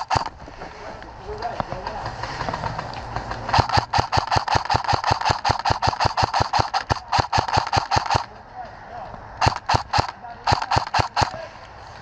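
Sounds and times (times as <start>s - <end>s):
airsoft rifle rapid fire: 0.0s - 0.4s, 3.5s - 8.3s, 9.4s - 11.4s.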